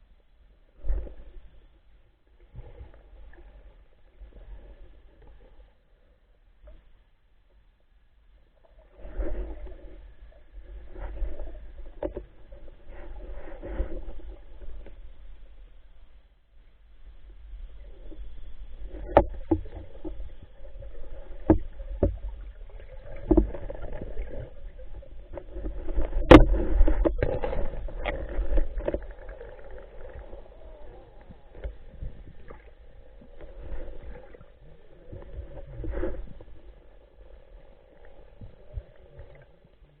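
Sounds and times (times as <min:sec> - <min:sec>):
muffled underwater movement: 0:00.0 - 0:07.7, 0:08.3 - 0:40.0
sharp knocks underwater: 0:18.9 - 0:20.3, 0:21.3 - 0:30.4.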